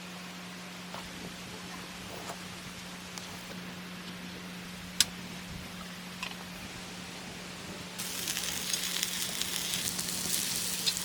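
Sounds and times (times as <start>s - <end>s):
food sizzling in a hot pan: 8.0s - 11.0s.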